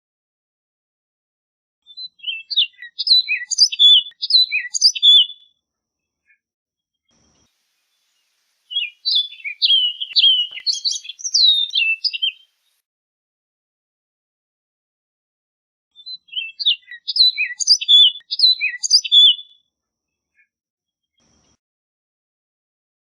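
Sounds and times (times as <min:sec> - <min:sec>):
oriole singing whistled notes: 0:01.9 - 0:05.4, 0:08.0 - 0:12.7, 0:16.0 - 0:19.6.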